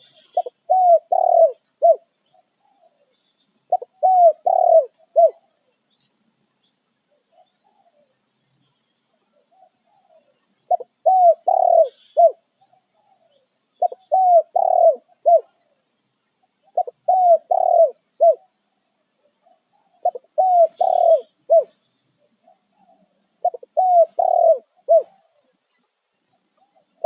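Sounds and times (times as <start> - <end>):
dove cooing: 0.0 - 2.0, 3.7 - 5.5, 9.5 - 15.5, 16.6 - 18.5, 19.4 - 21.8, 22.4 - 25.4.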